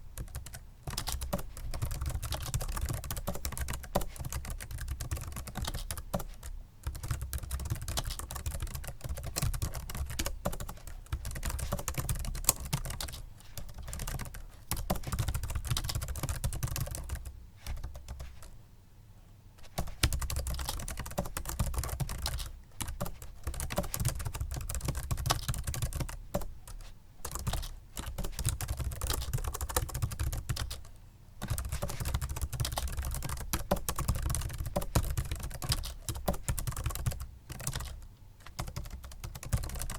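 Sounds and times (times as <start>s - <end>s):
fast typing on keyboard: 0.0s - 18.5s, 19.6s - 39.9s.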